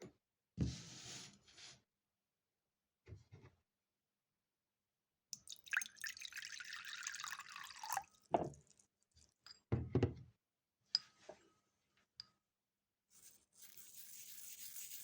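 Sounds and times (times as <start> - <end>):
liquid poured into container: 5.4 - 9.2.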